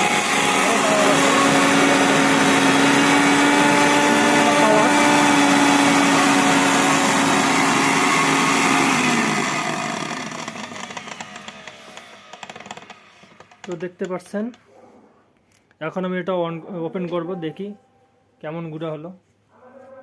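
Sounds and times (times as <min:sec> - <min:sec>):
mixer grinder motor whirring: 0:00.0 - 0:13.9.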